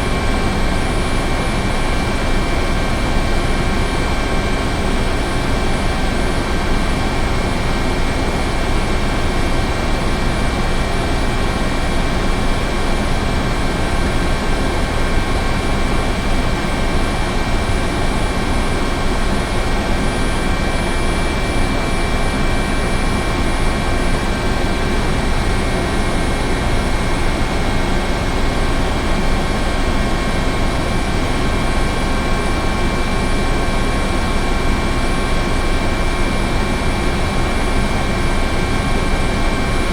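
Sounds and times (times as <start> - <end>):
helicopter rumble: 0.0 - 39.9.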